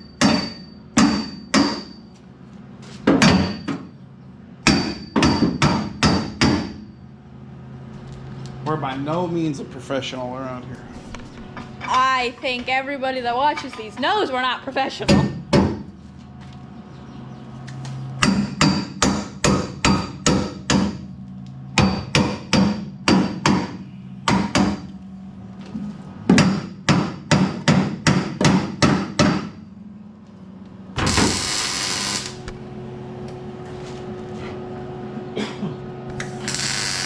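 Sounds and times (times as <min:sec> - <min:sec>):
hammer striking metal: 0:00.0 - 0:02.0, 0:04.6 - 0:06.9, 0:18.2 - 0:21.0, 0:21.8 - 0:24.9, 0:26.3 - 0:29.6.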